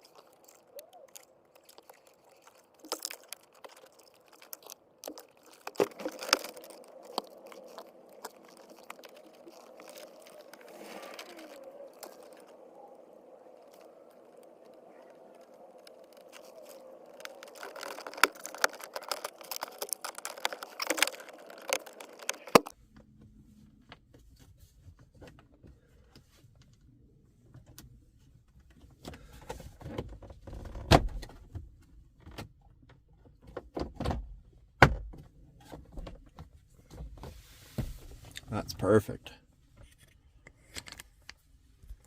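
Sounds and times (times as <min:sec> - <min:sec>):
faint hum: 0:00.0 - 0:24.0.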